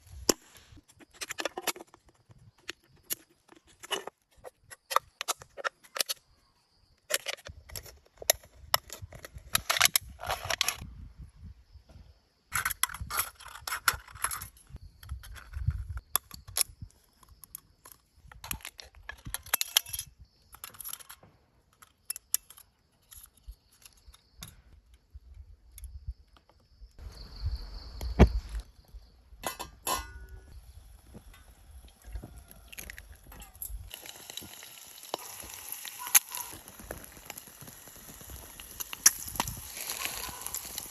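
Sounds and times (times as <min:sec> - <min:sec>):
metal can being cut and crinkled: 0:32.7 - 0:40.9.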